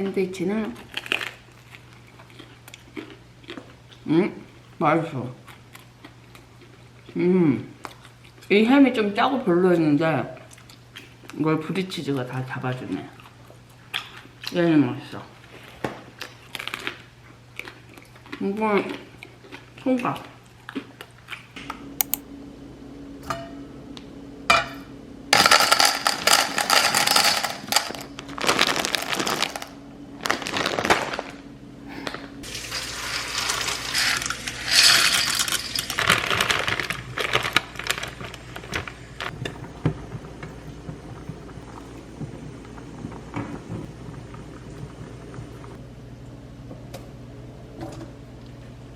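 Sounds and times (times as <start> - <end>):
steady low hum: 21.6 - 48.9
sharp clicks: 22.0 - 22.2
dishes and utensils clattering: 32.5 - 36.6.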